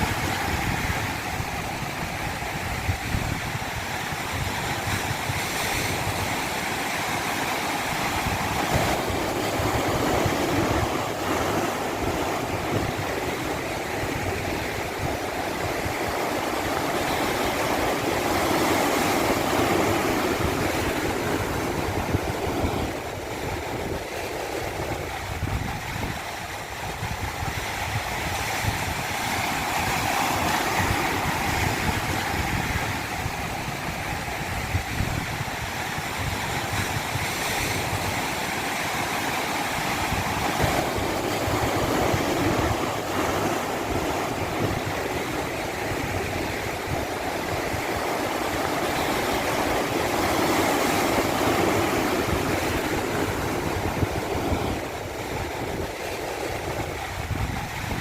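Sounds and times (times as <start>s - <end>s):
rushing water: 0.0s - 58.0s.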